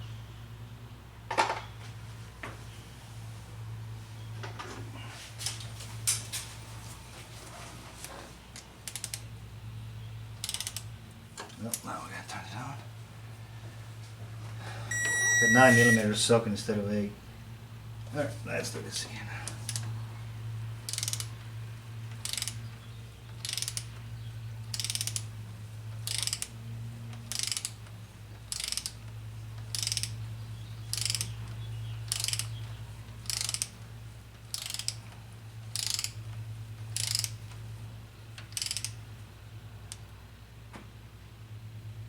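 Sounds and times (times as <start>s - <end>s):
steady low hum: 1.9s - 42.0s
ratchet wrench clicking: 8.8s - 9.3s, 10.4s - 10.9s, 19.6s - 19.9s, 20.8s - 21.4s, 22.1s - 22.6s, 23.3s - 24.0s, 24.7s - 25.3s, 26.0s - 26.5s, 27.1s - 30.2s, 30.8s - 31.4s, 32.1s - 33.8s, 34.5s - 37.5s, 38.4s - 39.0s.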